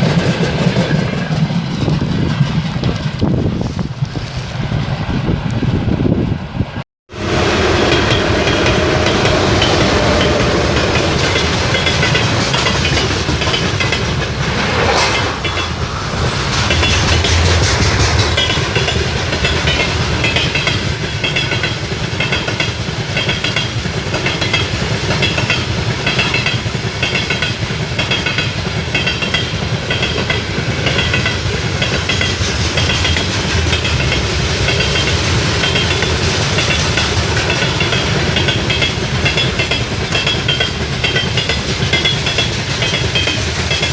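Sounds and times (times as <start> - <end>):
train rumble: 0.0 - 43.9
train wheels clattering over rail joints: 7.8 - 14.6, 16.5 - 43.9.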